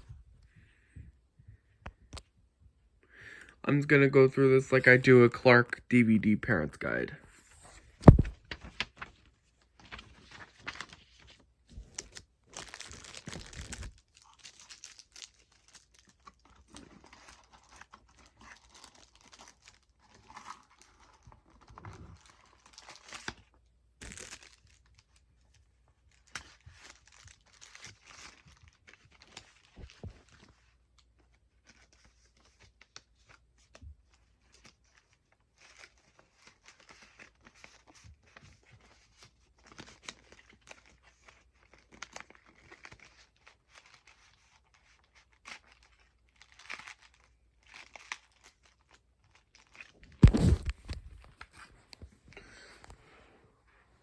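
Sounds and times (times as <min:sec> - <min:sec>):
paper rustling and crinkling: 0:07.4 - 0:52.2.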